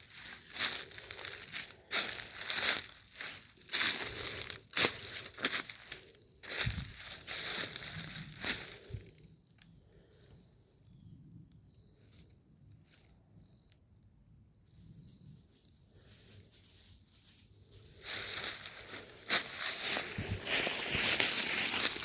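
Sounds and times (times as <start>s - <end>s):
footsteps crunching dry leaves: 0.0s - 9.2s, 16.6s - 22.0s.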